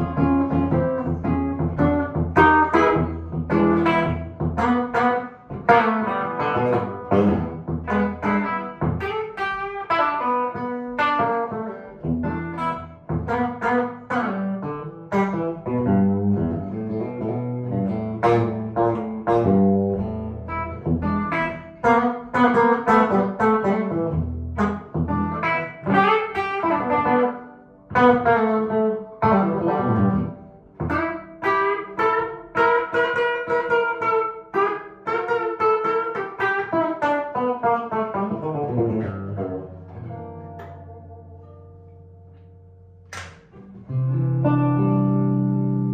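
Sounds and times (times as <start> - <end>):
electric guitar playing: 0.0 - 45.9.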